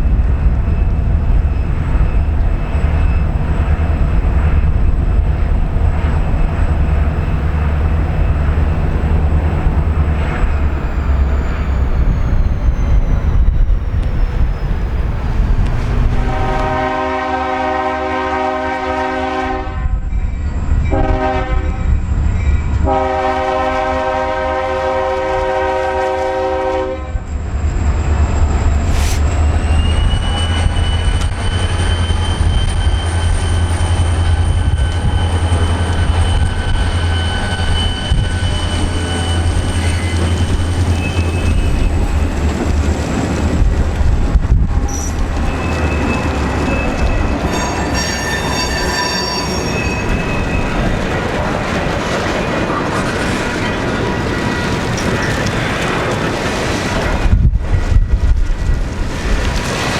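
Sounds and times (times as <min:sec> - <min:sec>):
train wheel flanges squealing: 0:00.0 - 0:17.0, 0:20.0 - 0:22.9, 0:27.2 - 0:59.9
locomotive engine rumble: 0:00.0 - 0:19.1, 0:22.0 - 0:59.9
railcar clickety-clack: 0:00.0 - 0:59.9
locomotive horn: 0:15.8 - 0:20.1, 0:20.9 - 0:21.9, 0:22.8 - 0:27.3.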